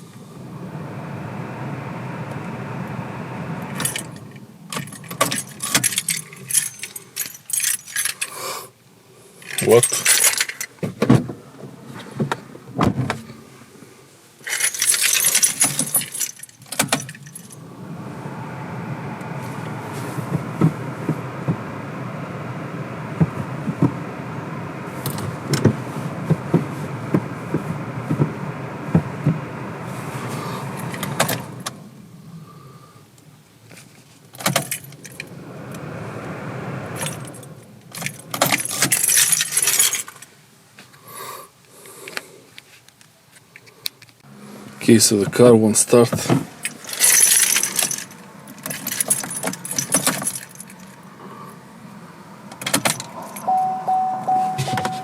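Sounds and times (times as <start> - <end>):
car keys jangling: 3.6 - 8.4, 9.4 - 10.8, 14.4 - 24.0, 24.6 - 31.8, 33.8 - 36.0, 36.9 - 40.3, 45.9 - 51.2, 52.4 - 55.0.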